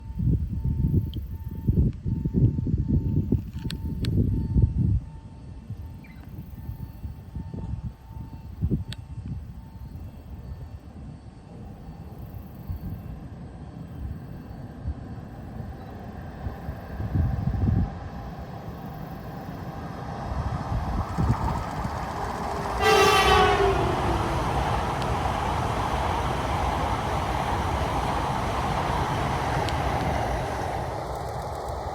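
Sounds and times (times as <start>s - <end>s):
train rushing past: 16.3s - 31.9s
train horn blast: 21.3s - 27.2s.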